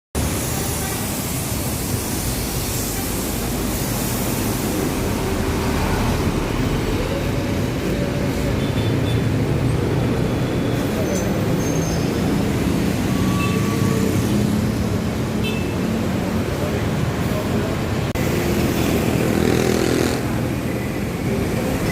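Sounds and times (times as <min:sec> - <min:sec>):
road noise: 0:00.1 - 0:21.9
bus engine hum: 0:00.2 - 0:15.4.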